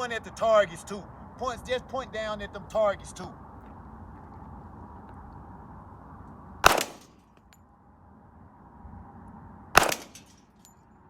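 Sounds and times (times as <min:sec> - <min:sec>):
pistol shot: 0:06.6 - 0:07.2, 0:09.8 - 0:10.4.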